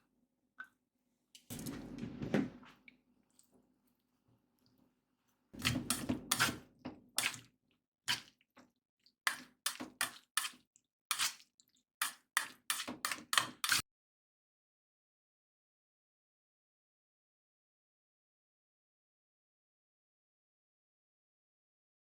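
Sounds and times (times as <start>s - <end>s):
wet food squelching: 5.6s - 7.5s, 8.1s - 13.8s.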